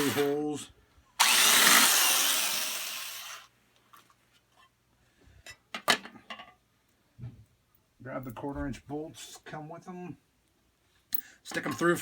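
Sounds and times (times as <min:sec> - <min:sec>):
power drill boring through metal: 0:00.0 - 0:00.4, 0:01.2 - 0:03.5.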